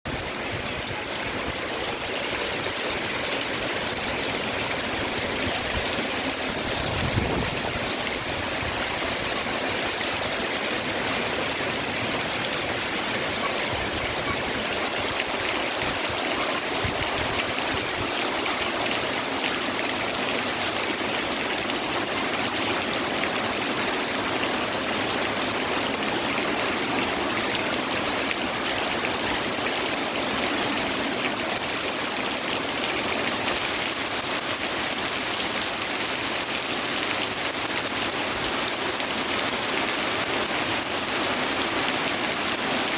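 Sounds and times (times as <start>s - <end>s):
heavy rain pouring: 0.1s - 42.9s.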